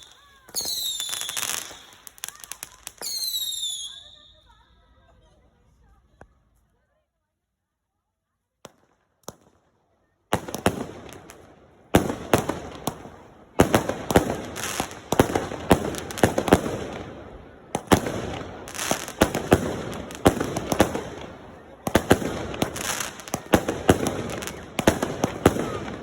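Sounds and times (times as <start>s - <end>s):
fireworks bangs and cracks: 0.0s - 4.1s, 10.3s - 26.0s
fireworks crackling: 0.0s - 6.6s, 10.4s - 26.0s.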